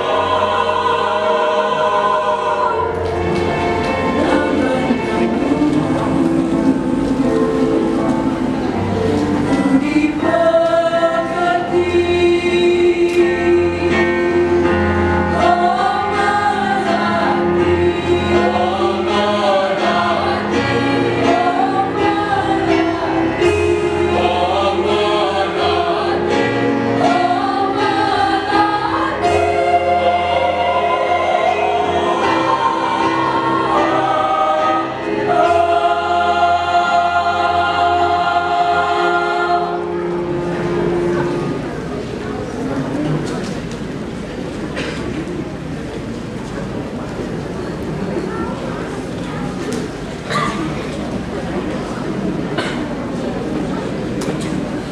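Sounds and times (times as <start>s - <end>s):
choir singing: 0.0s - 7.9s, 8.7s - 41.6s.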